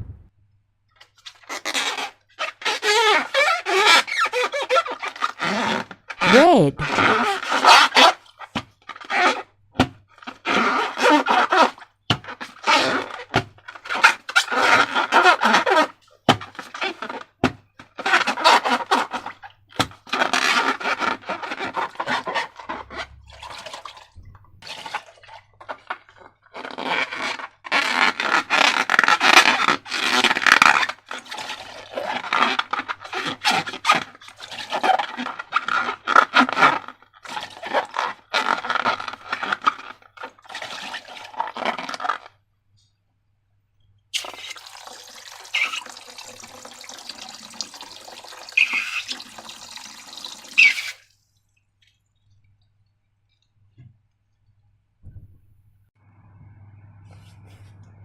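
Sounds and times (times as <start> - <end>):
slime scraping and squelching: 18.0 - 42.4, 48.5 - 49.2
water tap running: 44.2 - 51.1.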